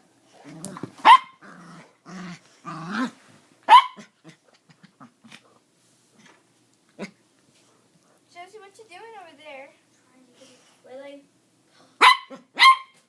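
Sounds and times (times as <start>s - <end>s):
dogs growling: 0.3s - 3.2s
dog barking sharply: 1.0s - 1.4s, 3.7s - 4.1s, 12.0s - 13.0s.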